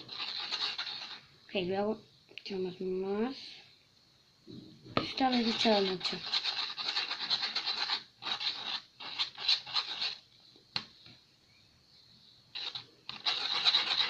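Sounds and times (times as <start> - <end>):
utensil scraping container: 0.0 - 1.3, 5.0 - 10.2, 12.6 - 14.0.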